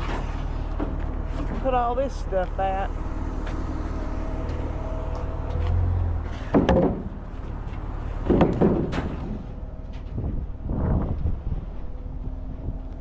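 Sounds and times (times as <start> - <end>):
low steady rumble: 0.0 - 13.0
doors banging shut: 6.3 - 7.6, 8.2 - 9.6.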